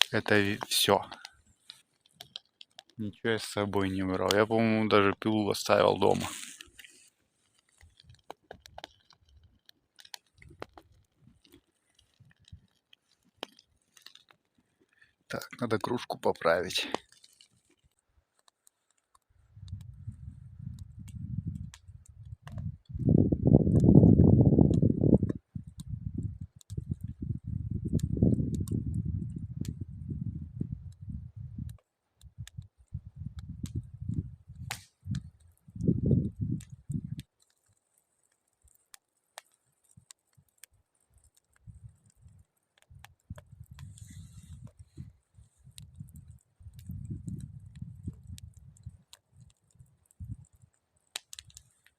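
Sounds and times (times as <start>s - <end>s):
campfire crackling and popping: 0.0s - 51.9s
wind buffeting microphone: 19.5s - 37.2s, 41.6s - 49.0s, 49.8s - 50.6s.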